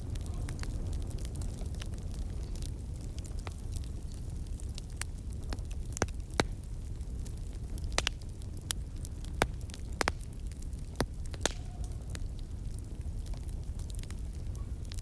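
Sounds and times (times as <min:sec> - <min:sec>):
fire crackling and popping: 0:00.0 - 0:15.0.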